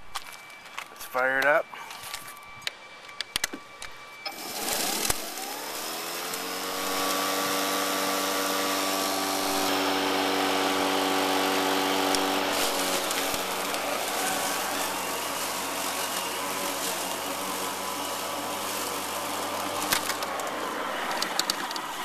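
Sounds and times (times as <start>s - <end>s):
electric lawn mower motor whining: 0.1s - 22.0s
clicks: 19.8s - 21.9s.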